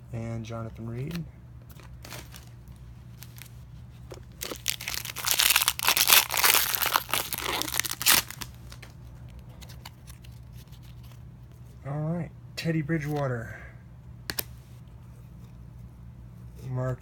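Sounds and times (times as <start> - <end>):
foil wrapper tearing and crinkling: 1.7 - 3.5, 4.3 - 9.0.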